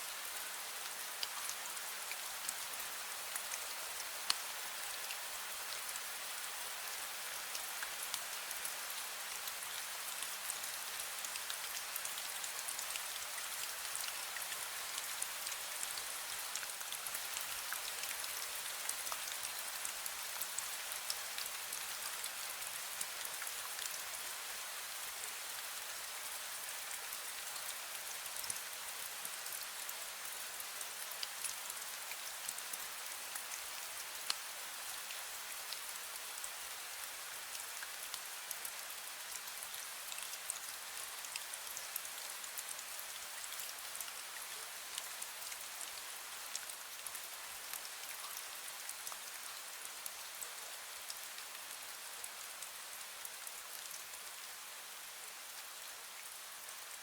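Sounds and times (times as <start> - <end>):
fine rain: 0.0 - 57.0
raindrops ticking on surfaces: 0.1 - 54.6.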